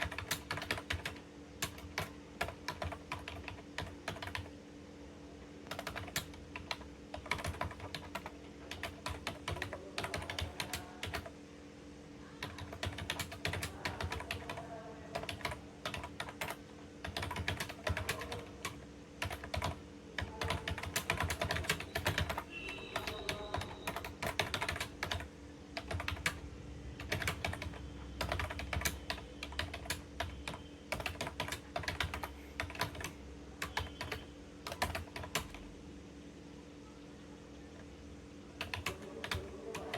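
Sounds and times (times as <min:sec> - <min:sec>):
fast keyboard typing: 0:00.0 - 0:04.6, 0:05.6 - 0:11.4, 0:12.4 - 0:35.6, 0:38.6 - 0:39.9
steady low hum: 0:00.0 - 0:39.9.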